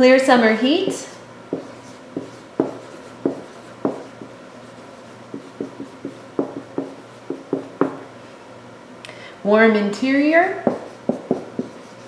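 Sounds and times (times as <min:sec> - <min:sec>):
marker writing on a whiteboard: 0:01.5 - 0:08.1, 0:10.6 - 0:12.0.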